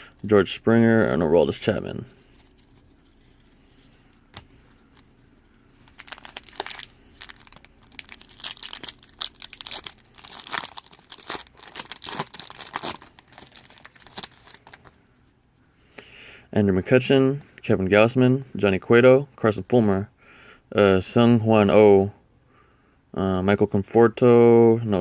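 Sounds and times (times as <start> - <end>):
wrapper crinkling and tearing: 5.8 - 15.0.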